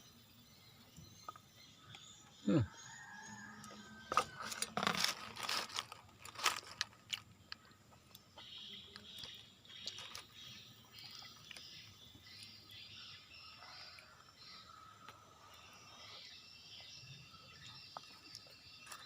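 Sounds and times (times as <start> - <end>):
crunchy bites: 4.1 - 11.7.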